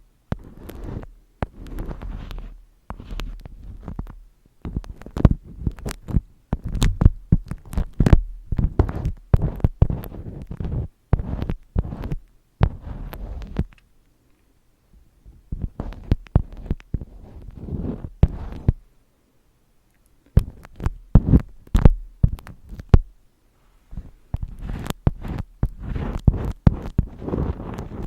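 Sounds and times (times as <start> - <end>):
taps and crackles: 0.3 - 13.9, 15.5 - 17.6, 19.9 - 23.1, 24.0 - 28.0
deep thumps: 20.4 - 23.2.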